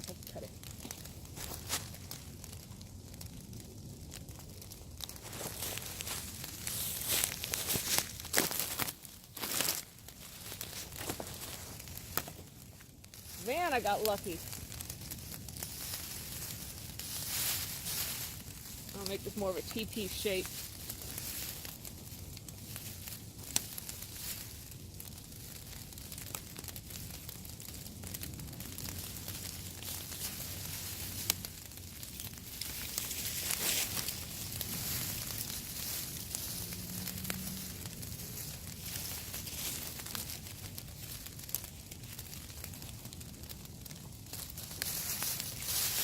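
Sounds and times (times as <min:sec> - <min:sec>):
branches and leaves rustling: 0:00.0 - 0:46.0
fire crackling: 0:00.0 - 0:46.0
rain hissing: 0:28.9 - 0:40.2.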